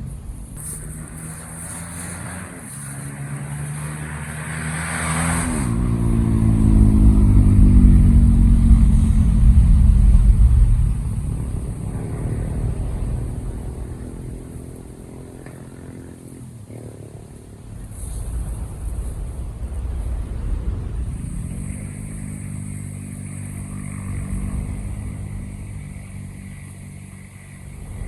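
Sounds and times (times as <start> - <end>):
engine revving: 0.0 - 28.0.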